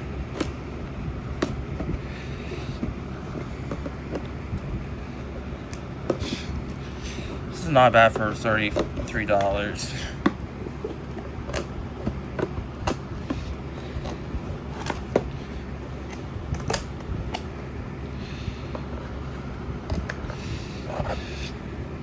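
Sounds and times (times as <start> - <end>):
steady low hum: 0.0 - 22.0
clicks and knocks of handling: 2.8 - 4.7, 8.1 - 9.6, 10.2 - 15.4, 16.0 - 17.5, 18.7 - 21.2.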